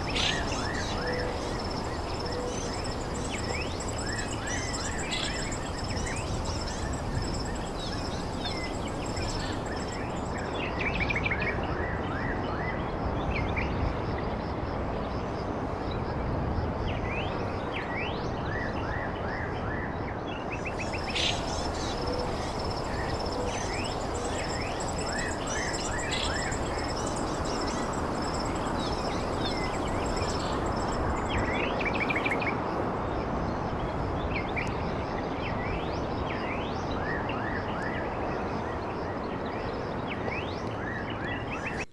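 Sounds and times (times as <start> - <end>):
small birds chirping: 0.0 - 10.8, 20.4 - 32.4
insect trill: 0.0 - 11.3, 20.5 - 32.5
outdoor background noise: 0.0 - 41.9.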